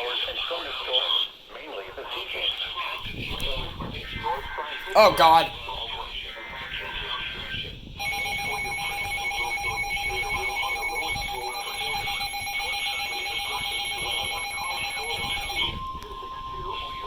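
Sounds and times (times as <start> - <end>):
rapidly pulsing alert beep: 8.0 - 17.0.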